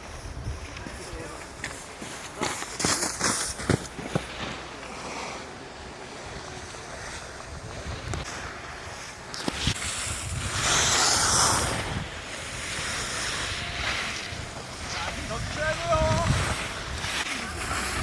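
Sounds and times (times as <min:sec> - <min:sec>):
wind rushing over microphone: 0:00.0 - 0:01.6, 0:05.5 - 0:18.0.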